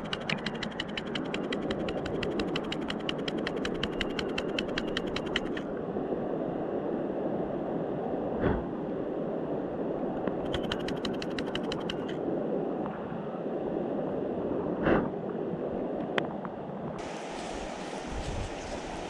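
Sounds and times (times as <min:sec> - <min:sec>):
run of sharp clicks: 0:00.0 - 0:05.6, 0:10.4 - 0:12.2
river water rushing: 0:17.0 - 0:19.0.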